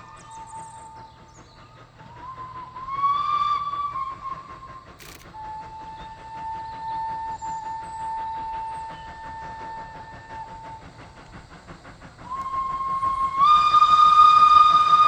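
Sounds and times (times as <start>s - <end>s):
steam locomotive whistle: 2.1s - 11.1s, 12.2s - 15.0s.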